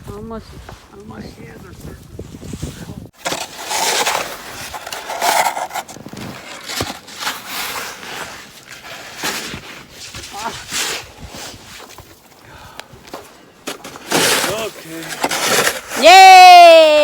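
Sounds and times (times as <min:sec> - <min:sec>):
shovel scraping snow: 0:02.4 - 0:12.1, 0:13.6 - 0:16.2.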